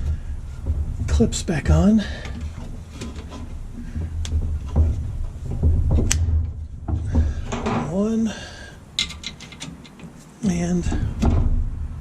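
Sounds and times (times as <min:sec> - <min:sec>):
metal clips knocking and rattling: 0:00.0 - 0:08.2, 0:08.9 - 0:12.0
metal clips clicking: 0:09.0 - 0:10.3.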